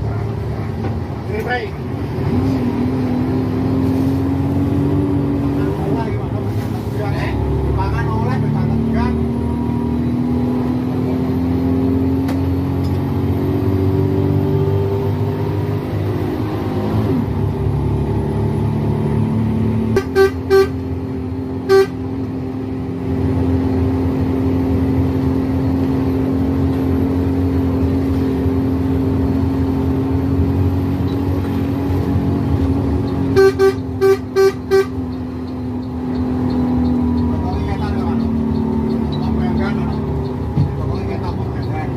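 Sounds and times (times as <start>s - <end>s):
bus engine drone: 0.0s - 41.9s
bus horn blasts: 19.9s - 21.0s, 21.6s - 22.2s, 33.2s - 35.2s.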